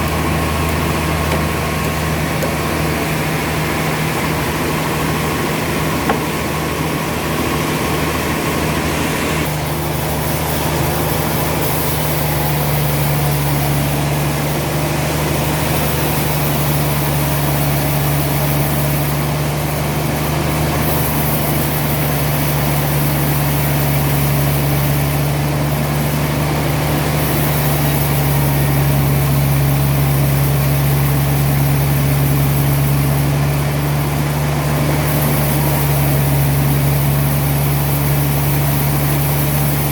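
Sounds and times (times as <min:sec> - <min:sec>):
heavy engine droning: 0:00.0 - 0:39.9.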